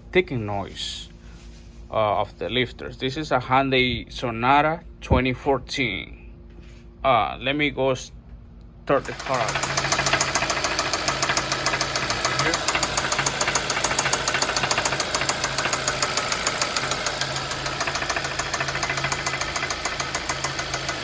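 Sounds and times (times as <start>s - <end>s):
car engine idling: 8.9s - 21.0s
rapid engine knocking and ticking: 8.9s - 21.0s.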